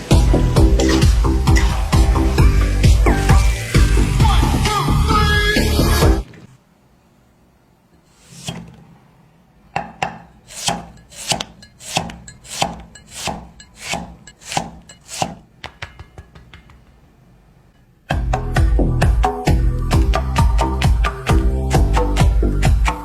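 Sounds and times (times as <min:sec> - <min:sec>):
knife chopping on wooden board: 0:09.8 - 0:15.5.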